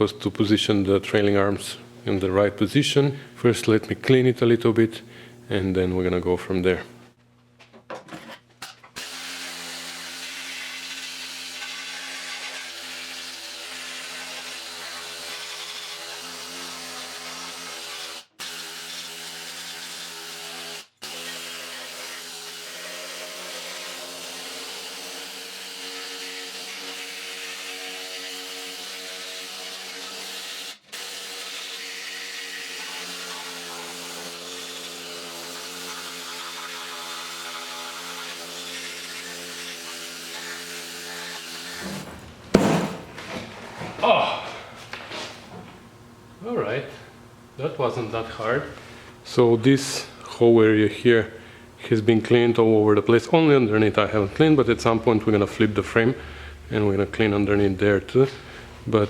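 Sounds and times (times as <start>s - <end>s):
needle scaler hammering metal: 42.5s - 43.2s.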